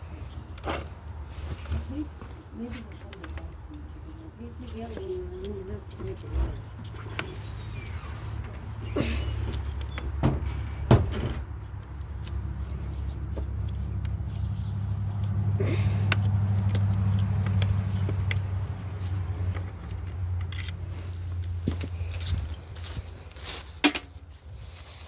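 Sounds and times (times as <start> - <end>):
low engine-like hum: 1.5 - 24.7
clicks of parts handled: 16.0 - 24.3.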